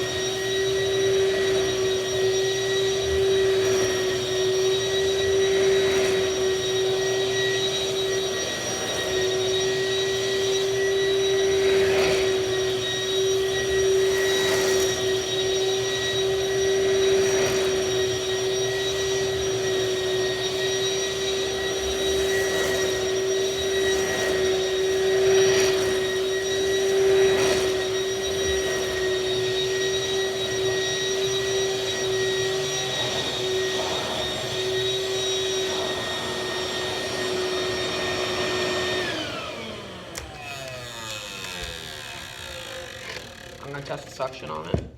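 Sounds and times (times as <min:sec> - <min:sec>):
vacuum cleaner whining: 0:00.0 - 0:44.9.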